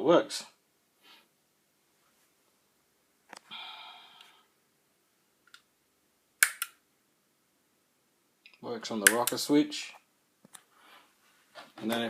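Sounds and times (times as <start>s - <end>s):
rocker switch clicks: 6.4s - 6.8s.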